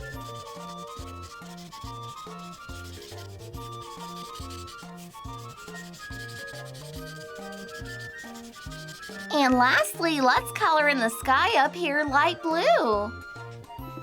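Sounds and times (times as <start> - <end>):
marker scratching on paper: 0.0 - 10.8
background music with beat: 13.1 - 14.0.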